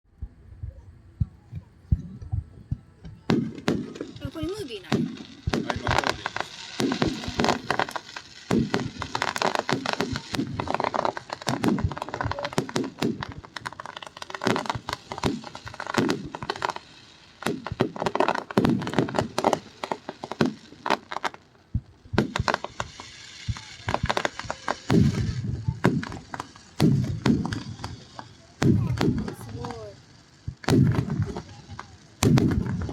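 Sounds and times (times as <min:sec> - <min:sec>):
people's voices: 0:00.2 - 0:12.8, 0:23.3 - 0:32.9
fireworks cracking and popping: 0:00.2 - 0:32.9.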